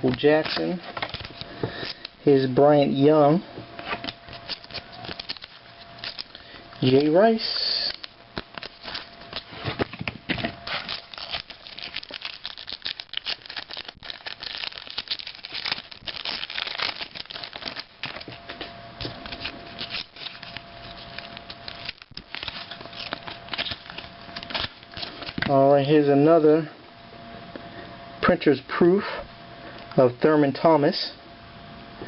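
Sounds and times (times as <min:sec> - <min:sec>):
wrapper tearing and crinkling: 0:00.4 - 0:02.1, 0:03.8 - 0:25.5
cards being handled: 0:03.8 - 0:25.5.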